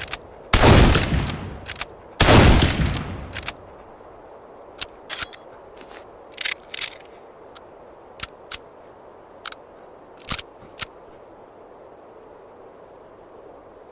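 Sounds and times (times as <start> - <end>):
rifle bolt metallic clicks: 0.0 - 0.2, 0.9 - 1.9, 2.6 - 3.6, 4.8 - 5.4, 6.3 - 8.6, 10.2 - 11.0
steady hiss: 0.0 - 13.9.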